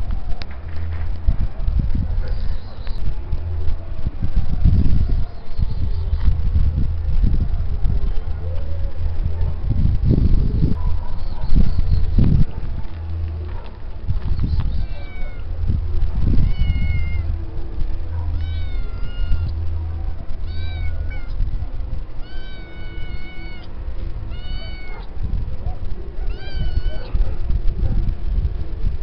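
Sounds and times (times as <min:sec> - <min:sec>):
low rumble: 0:00.0 - 0:29.0
cat meowing: 0:14.6 - 0:15.5, 0:16.4 - 0:17.3, 0:18.2 - 0:19.6, 0:20.4 - 0:21.4, 0:22.2 - 0:23.7, 0:24.3 - 0:25.1, 0:26.2 - 0:27.2.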